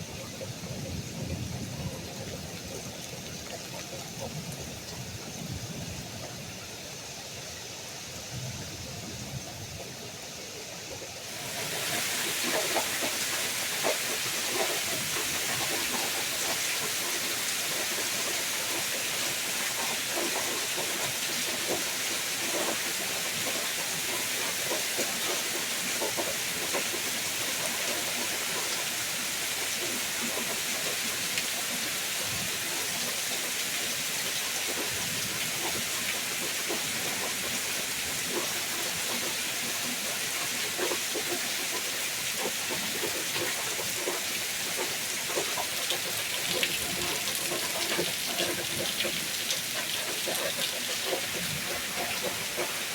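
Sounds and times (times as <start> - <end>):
heavy rain pouring: 0.0 - 52.9.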